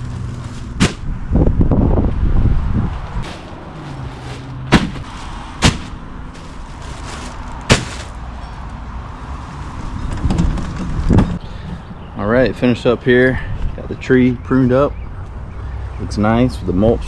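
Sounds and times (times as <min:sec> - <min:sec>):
sharp cracks: 0:00.7 - 0:01.1, 0:04.7 - 0:06.0, 0:07.1 - 0:08.2.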